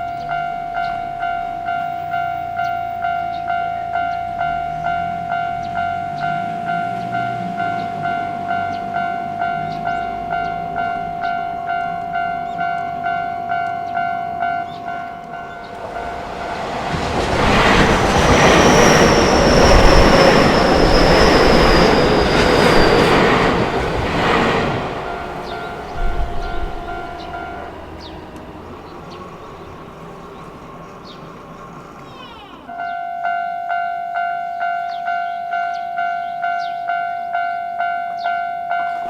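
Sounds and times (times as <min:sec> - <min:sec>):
level crossing alarm ringing: 0:00.0 - 0:28.2
electric train passing: 0:00.0 - 0:32.0
train wheel clacks: 0:15.2 - 0:29.3.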